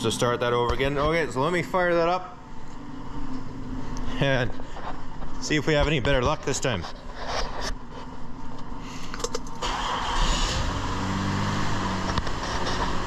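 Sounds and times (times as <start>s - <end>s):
engine running rough and popping: 9.8s - 13.0s.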